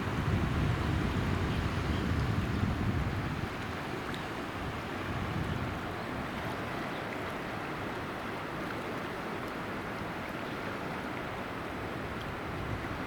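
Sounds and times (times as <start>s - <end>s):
wind buffeting microphone: 0.0s - 6.8s, 11.8s - 13.0s
rushing river: 0.0s - 13.0s.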